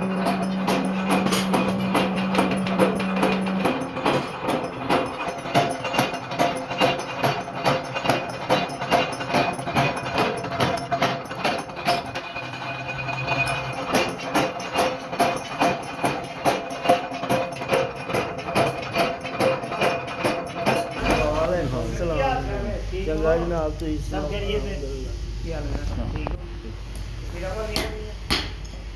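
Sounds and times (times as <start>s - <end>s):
music with percussive beat: 0.0s - 12.1s.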